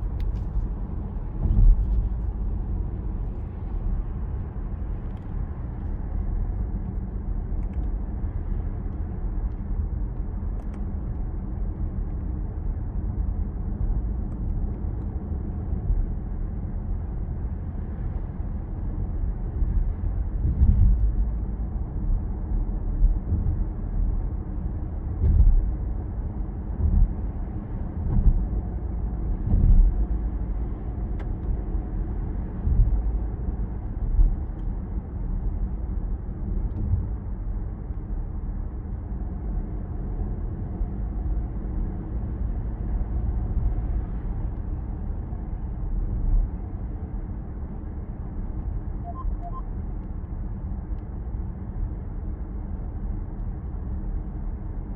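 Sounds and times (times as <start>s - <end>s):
road and engine rumble: 0.0s - 54.9s.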